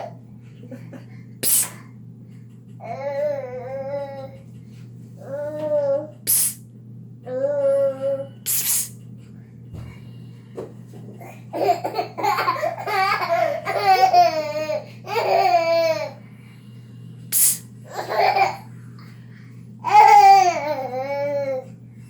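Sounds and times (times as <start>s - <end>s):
steady low hum: 0.0s - 22.0s
short hissy bursts: 1.4s - 1.8s, 8.5s - 9.0s, 17.3s - 17.7s.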